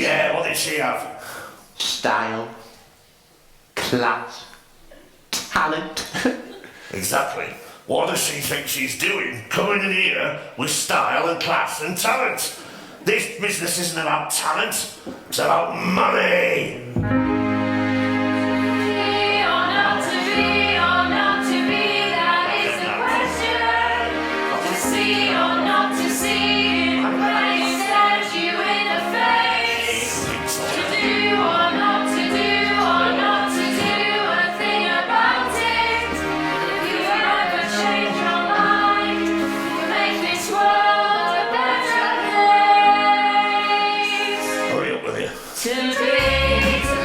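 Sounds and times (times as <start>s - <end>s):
low bass notes: 16.8s - 18.3s
choral singing in harmony: 17.0s - 44.8s, 45.6s - 47.0s.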